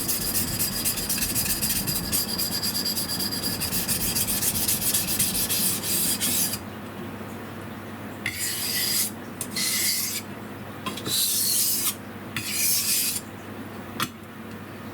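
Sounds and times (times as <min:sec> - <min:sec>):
knife scraping on whetstone: 0:00.0 - 0:06.6, 0:08.3 - 0:10.3, 0:11.1 - 0:13.2.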